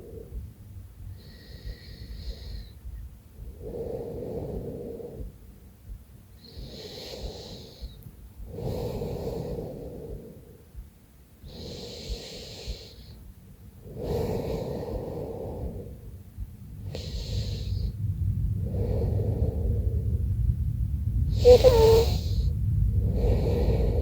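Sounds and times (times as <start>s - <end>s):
hissing breaths: 13.8s - 20.2s, 21.3s - 24.0s
woman snoring: 21.4s - 22.5s.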